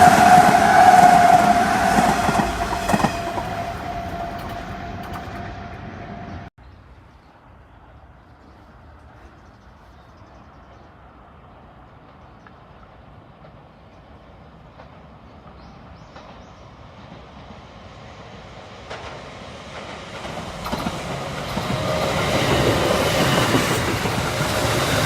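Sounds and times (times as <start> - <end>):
train wheels clicking over rail joints: 0.0 - 6.4, 18.8 - 25.0
electric train approaching: 0.0 - 6.5, 10.9 - 25.0.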